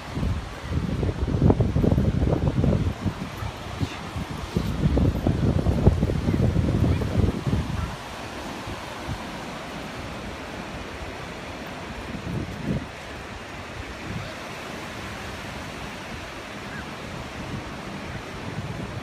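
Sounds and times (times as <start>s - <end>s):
ocean surf breaking: 0.0s - 19.0s
wind gusts on microphone: 0.0s - 19.0s.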